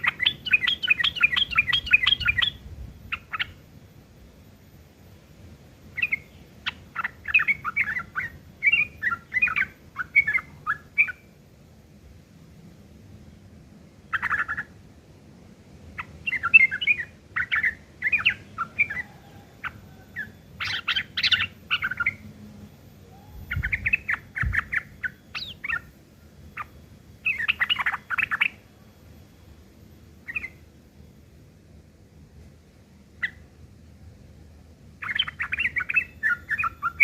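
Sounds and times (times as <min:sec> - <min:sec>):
bird singing chattering phrases: 0:00.0 - 0:03.6, 0:06.0 - 0:11.3, 0:14.0 - 0:14.8, 0:15.9 - 0:22.3, 0:23.0 - 0:28.6, 0:30.2 - 0:30.6, 0:33.2 - 0:33.5, 0:35.0 - 0:37.0.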